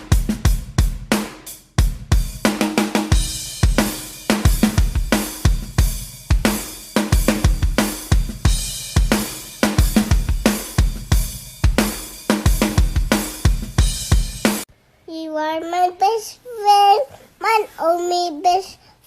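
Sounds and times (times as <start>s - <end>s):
drum kit beat: 0.0s - 14.7s.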